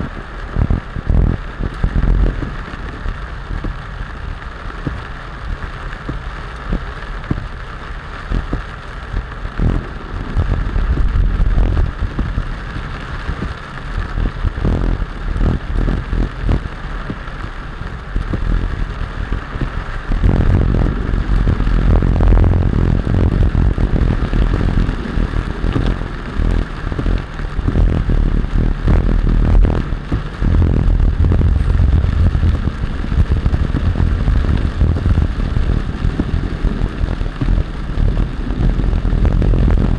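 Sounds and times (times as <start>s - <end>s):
road and engine rumble: 0.0s - 39.9s
crackling clattering hits: 8.3s - 39.9s.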